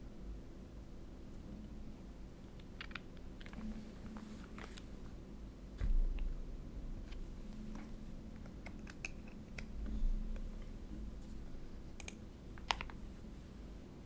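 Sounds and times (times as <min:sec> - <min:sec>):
mechanical keyboard typing: 0:02.6 - 0:03.6.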